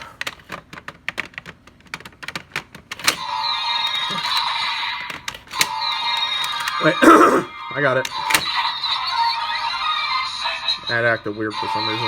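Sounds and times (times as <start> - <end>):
plastic clicking: 0.0 - 3.2, 3.9 - 7.0, 8.0 - 8.6.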